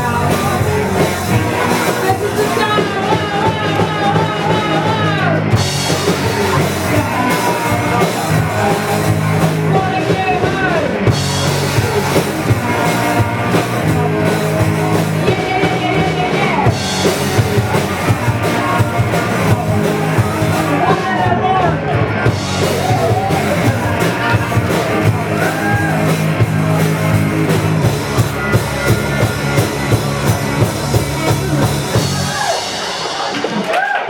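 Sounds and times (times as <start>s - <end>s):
person singing: 0.0s - 27.0s
live punk rock band: 0.0s - 34.0s.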